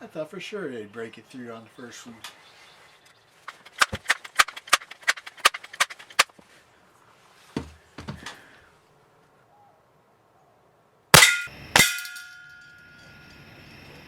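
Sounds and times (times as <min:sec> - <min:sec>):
dull thuds: 0:03.5 - 0:06.0, 0:07.6 - 0:08.4
sharp clicks: 0:03.5 - 0:06.3.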